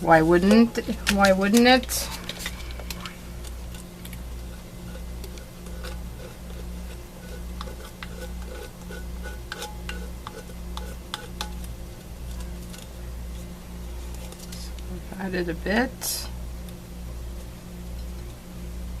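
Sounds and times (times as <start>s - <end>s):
pulsing low hum: 0.0s - 19.0s
tool scraping texture paste: 4.9s - 11.4s.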